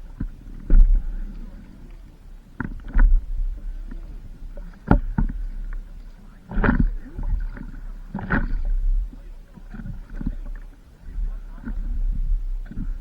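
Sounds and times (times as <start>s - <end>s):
paddle strokes splashing in water: 0.0s - 13.0s
wind on microphone: 0.0s - 13.0s.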